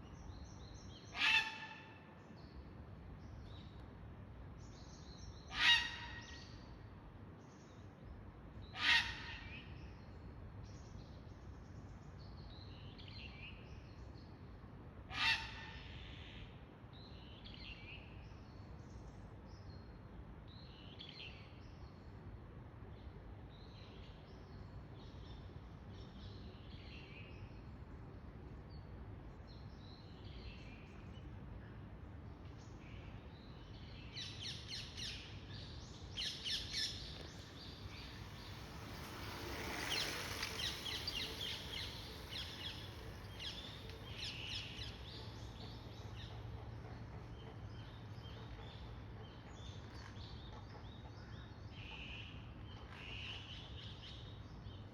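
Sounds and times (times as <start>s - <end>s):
birds chirping: 35.6s - 46.3s
rushing noise: 36.9s - 44.2s.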